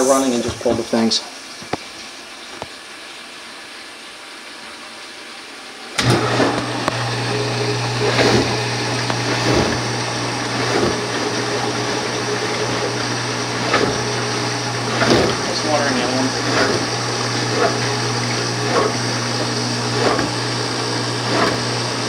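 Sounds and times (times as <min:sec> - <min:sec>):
water noise: 0:00.0 - 0:22.0
appliance motor humming: 0:06.0 - 0:22.0.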